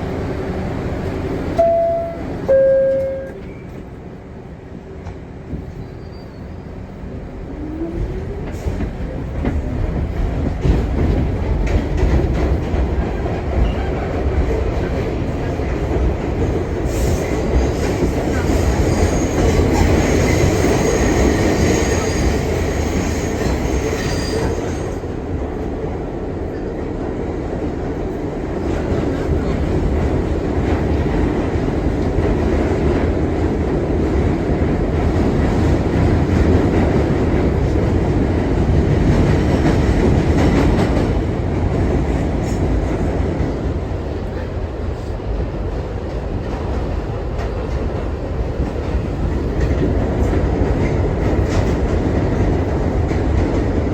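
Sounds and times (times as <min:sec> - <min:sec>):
subway train rumbling on rails: 0:00.0 - 0:53.9
train wheels squealing: 0:05.7 - 0:06.9, 0:16.9 - 0:25.0.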